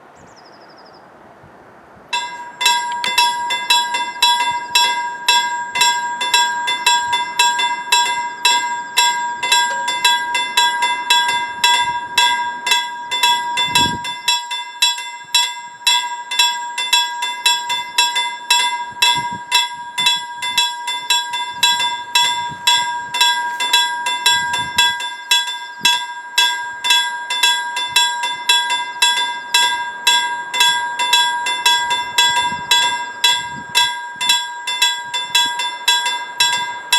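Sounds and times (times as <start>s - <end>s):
level-crossing warning bell ringing: 2.1s - 36.9s.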